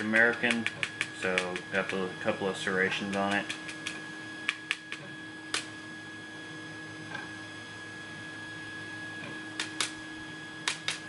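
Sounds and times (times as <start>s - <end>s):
three d printers humming and whining: 0.0s - 11.0s
sharp clicks of small parts: 10.7s - 11.0s.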